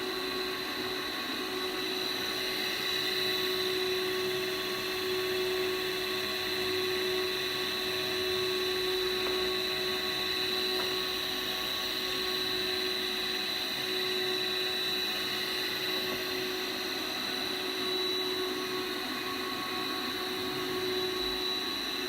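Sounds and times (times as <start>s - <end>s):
electrical machinery whirring: 0.0s - 22.0s.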